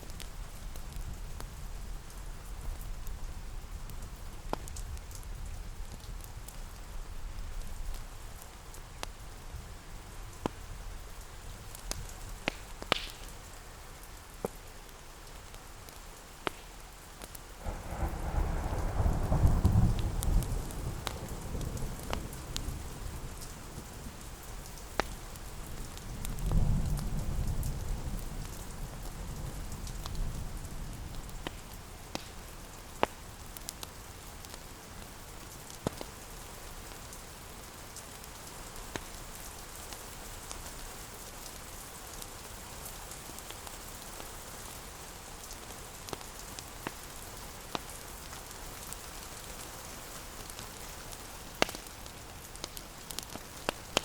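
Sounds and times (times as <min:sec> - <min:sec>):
steady rain: 0:00.0 - 0:54.0
sharp crackles: 0:10.1 - 0:54.0
thunder rumbling: 0:17.6 - 0:23.4.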